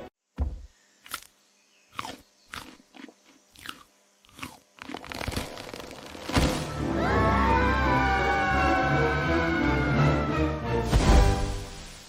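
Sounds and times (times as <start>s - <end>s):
crunching sound effects: 1.9s - 6.8s.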